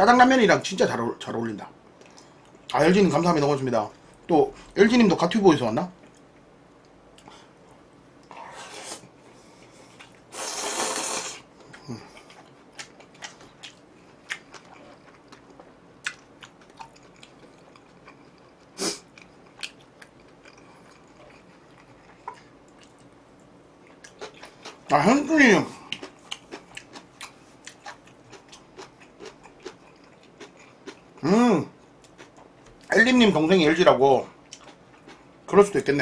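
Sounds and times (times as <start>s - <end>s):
person chewing noodles: 8.2s - 24.9s, 25.8s - 31.2s, 34.4s - 35.4s.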